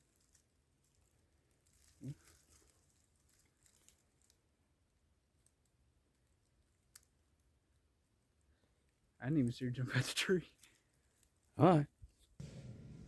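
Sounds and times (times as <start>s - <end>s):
faint rustling: 12.4s - 13.0s
low murmur: 12.4s - 13.0s.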